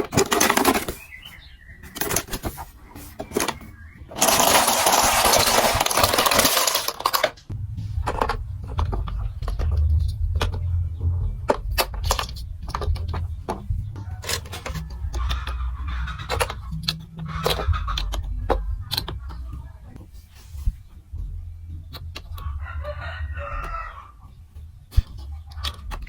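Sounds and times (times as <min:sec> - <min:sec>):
marbles clicking against pieces: 0:04.1 - 0:07.3
marbles pouring with clatter: 0:04.1 - 0:07.3
marbles rolling on plastic track: 0:04.1 - 0:07.4.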